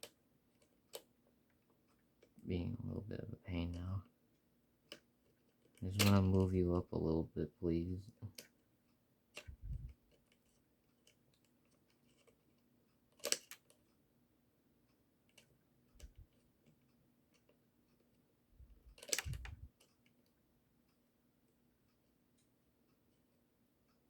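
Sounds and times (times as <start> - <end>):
pliers clicking on plastic gear: 13.2 - 13.8, 19.0 - 19.5.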